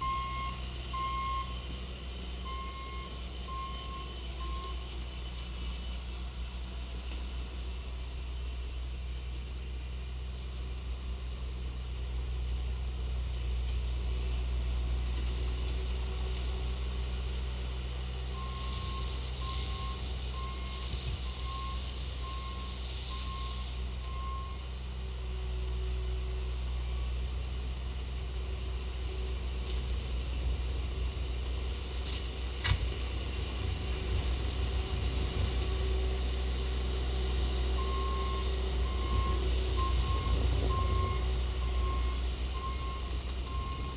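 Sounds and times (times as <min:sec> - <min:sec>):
diesel engine running: 0:00.0 - 0:43.9
hiss: 0:18.6 - 0:24.1.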